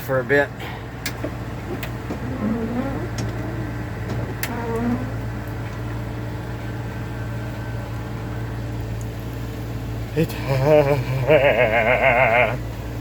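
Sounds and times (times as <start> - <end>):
truck engine idling: 0.0 - 13.0.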